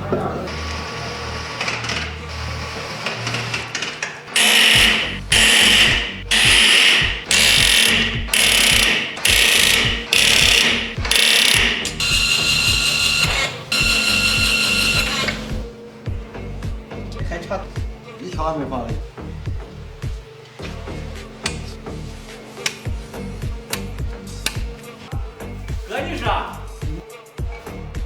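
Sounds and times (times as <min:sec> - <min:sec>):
background music with steady beat: 0:00.0 - 0:28.0
power tool running in bursts: 0:00.5 - 0:16.3.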